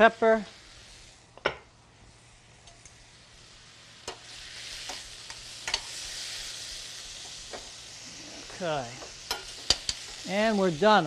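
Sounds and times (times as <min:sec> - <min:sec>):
vegetables sizzling in a pan: 0:00.0 - 0:11.0
utensil clicking against pan: 0:09.0 - 0:10.2.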